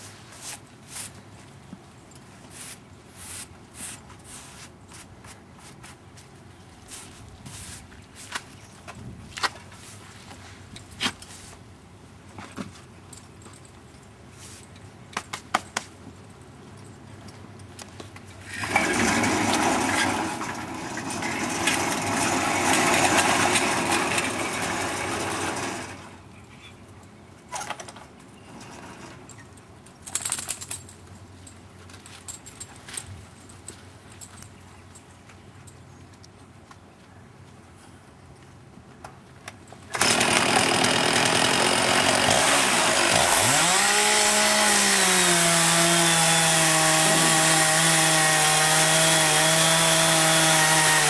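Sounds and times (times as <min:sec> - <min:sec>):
loud sawing: 0:18.5 - 0:26.2, 0:39.9 - 0:51.0.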